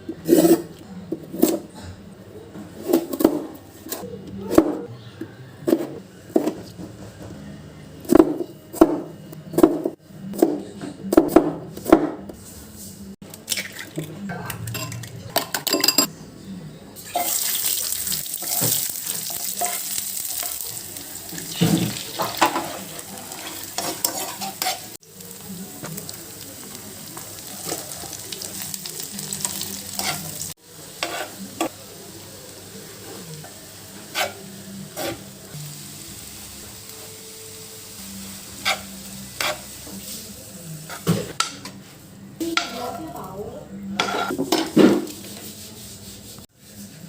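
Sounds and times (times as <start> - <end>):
cabbage sizzling in a pan: 17.1 - 41.0
spatula scraping and knocking pan: 21.3 - 25.0, 44.0 - 45.5.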